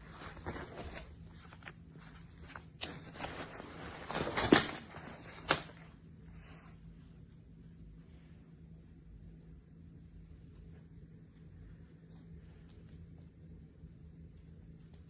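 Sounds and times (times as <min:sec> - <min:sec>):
fabric rustling: 0:00.0 - 0:07.1.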